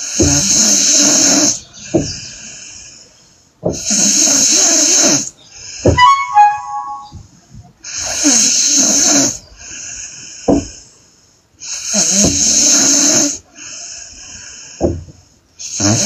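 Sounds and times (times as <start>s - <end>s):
short whistling tone: 6.0s - 7.2s
woman snoring: 15.8s - 16.0s.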